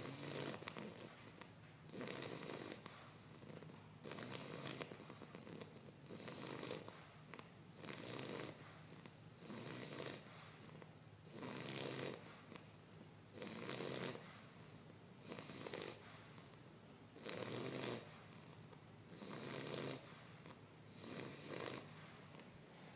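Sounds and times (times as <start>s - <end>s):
person snoring: 0.0s - 1.1s, 1.9s - 6.9s, 7.8s - 8.6s, 9.4s - 10.3s, 11.3s - 12.3s, 13.3s - 14.2s, 15.2s - 16.0s, 17.2s - 22.0s.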